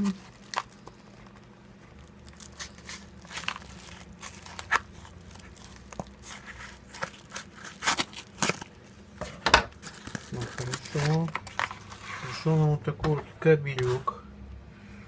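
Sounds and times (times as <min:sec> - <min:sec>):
parcel packaging crinkling and tearing: 0:00.0 - 0:09.1, 0:09.7 - 0:12.6.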